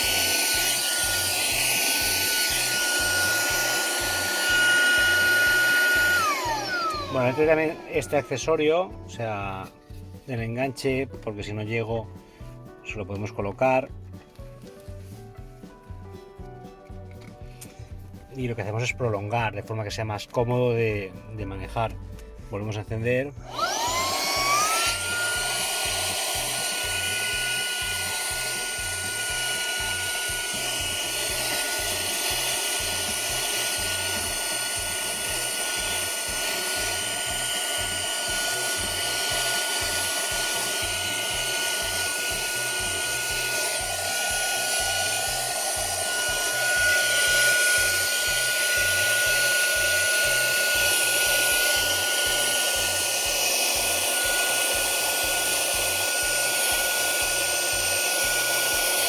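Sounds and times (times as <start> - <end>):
handheld vacuum cleaner whining: 0.0 - 59.0.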